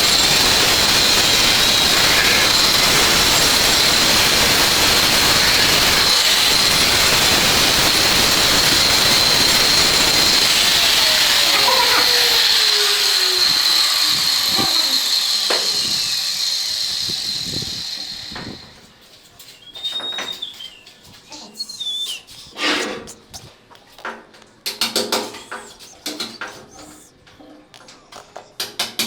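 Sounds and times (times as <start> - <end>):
power tool whining: 0.0 - 19.0
brief squeal: 19.6 - 23.2.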